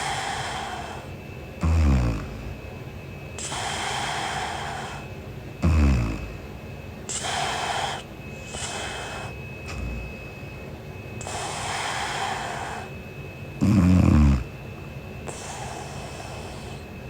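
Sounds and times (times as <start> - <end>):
woman snoring: 0.0 - 2.7, 3.4 - 6.5, 7.1 - 10.2, 11.2 - 12.9, 13.6 - 14.6, 15.3 - 16.9
noisy breaths: 0.0 - 17.0.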